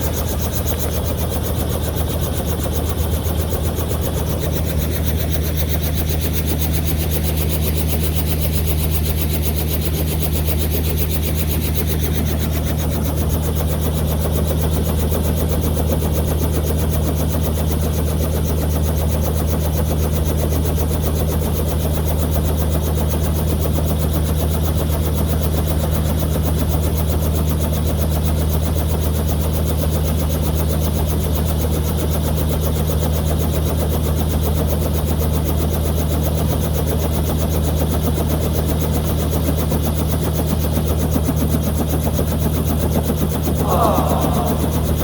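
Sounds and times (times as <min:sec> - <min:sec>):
helicopter engine and rotor: 0:00.0 - 0:45.0
brief higher sound: 0:43.6 - 0:45.0.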